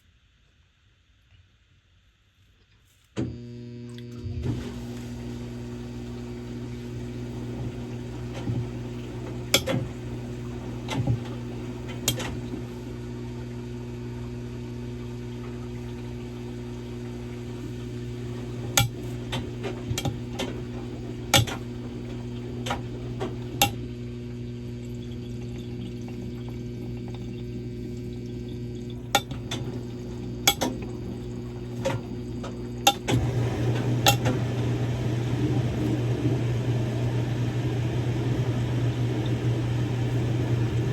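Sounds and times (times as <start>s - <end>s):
washing machine motor hum: 3.2s - 40.9s
water sloshing: 14.2s - 23.8s, 24.8s - 36.1s
sharp clicks and clinks: 30.5s - 30.8s.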